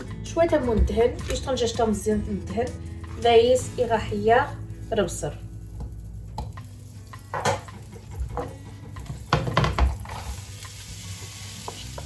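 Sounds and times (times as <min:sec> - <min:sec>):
sauce sizzling in a pan: 0:03.2 - 0:12.0
spoon knocking against a pan: 0:05.8 - 0:10.1.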